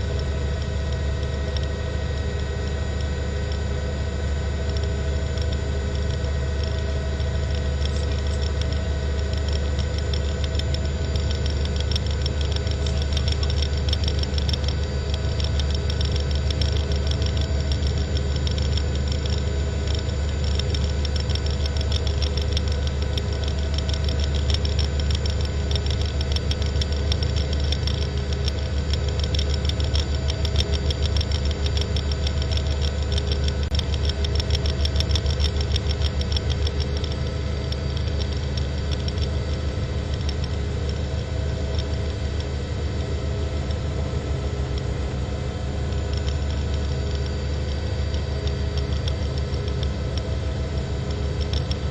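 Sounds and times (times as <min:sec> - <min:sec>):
helicopter cabin noise: 0:00.0 - 0:34.4.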